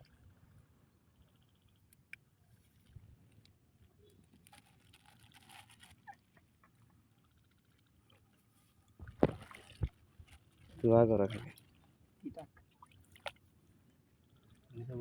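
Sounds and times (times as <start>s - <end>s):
splashing in shallow water: 9.0s - 13.6s.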